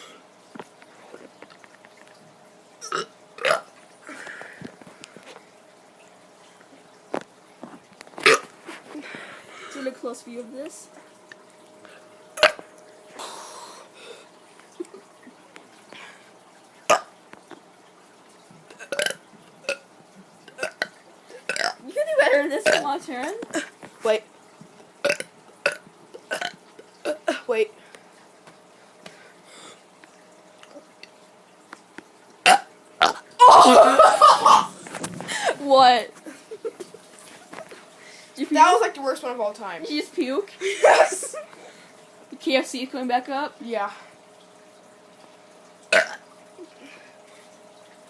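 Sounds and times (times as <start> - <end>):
child burping: 2.8 - 3.7, 18.8 - 19.8, 20.6 - 21.8, 25.0 - 27.5, 32.5 - 35.6, 45.9 - 46.2
child throat sounds: 45.9 - 46.2.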